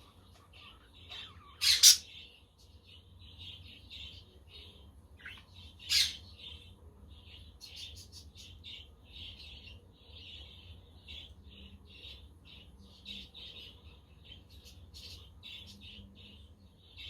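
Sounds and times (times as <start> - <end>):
budgerigars chattering: 0.6 - 2.2, 5.2 - 6.3
harsh bird squawk: 0.6 - 2.2, 5.8 - 6.2.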